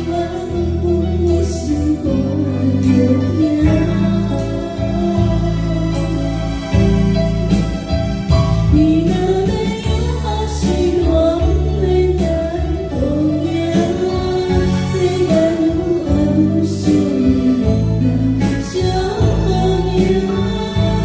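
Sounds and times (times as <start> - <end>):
person singing slow melody: 0.0 - 6.8
instrumental backing: 0.0 - 21.0.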